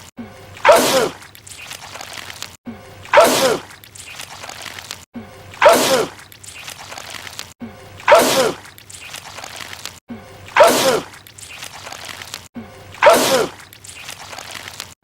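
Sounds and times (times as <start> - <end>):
man sneezing loudly: 8.1 - 8.6, 10.6 - 11.1, 13.0 - 13.6.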